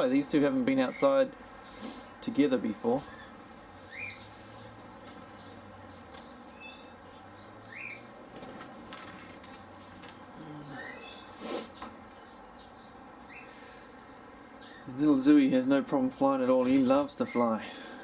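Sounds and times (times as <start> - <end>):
high bird chirps: 3.0 - 9.0, 9.7 - 13.7, 16.9 - 17.6
bird wing flaps: 8.3 - 10.5.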